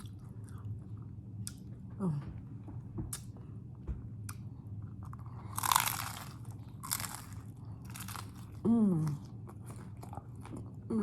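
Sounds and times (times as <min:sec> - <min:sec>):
chewing crunchy taco: 0:00.0 - 0:01.8, 0:04.2 - 0:11.0.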